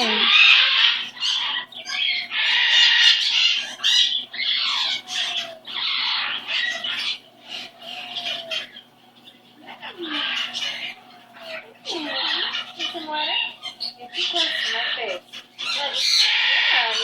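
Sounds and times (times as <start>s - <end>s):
cockatoo squawking and chattering: 0.0s - 17.0s.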